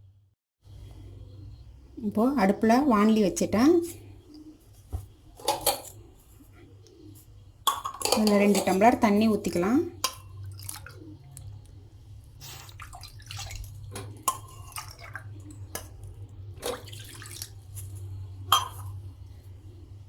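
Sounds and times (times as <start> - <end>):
metal vessels clinking: 5.4 - 6.1, 7.6 - 11.1, 12.6 - 16.0, 16.6 - 19.0
water pouring into a pan: 12.4 - 15.7, 16.6 - 17.8.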